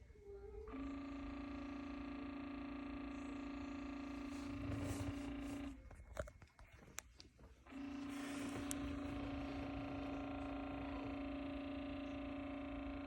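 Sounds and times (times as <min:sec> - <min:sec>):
humidifier motor humming: 0:00.0 - 0:13.0
motor clicks: 0:04.1 - 0:13.0.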